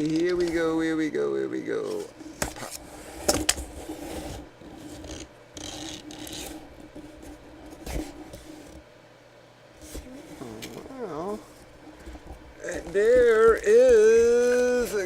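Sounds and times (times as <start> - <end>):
cardboard rubbing and scraping: 2.0 - 8.8, 9.8 - 15.0.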